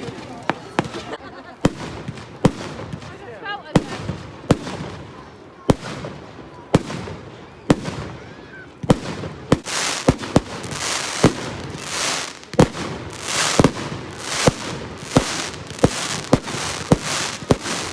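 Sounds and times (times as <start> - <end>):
fireworks bangs: 0.0 - 17.9
fireworks hissing crackle: 9.0 - 17.9.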